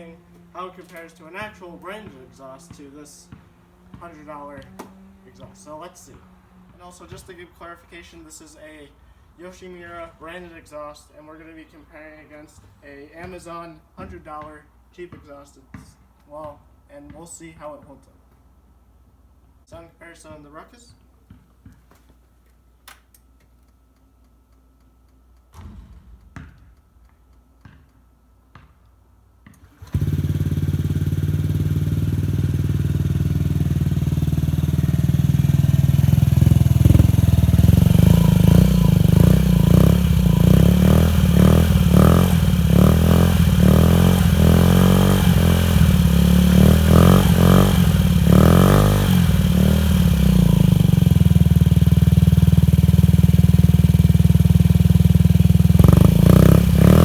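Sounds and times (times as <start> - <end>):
scooter engine revving: 2.0 - 6.7, 29.6 - 57.0
quiet clicks: 21.9 - 25.5.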